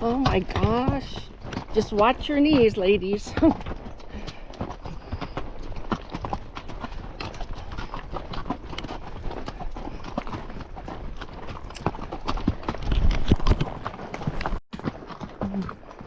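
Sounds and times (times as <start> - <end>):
horse hooves on rocky trail: 0.0 - 16.0.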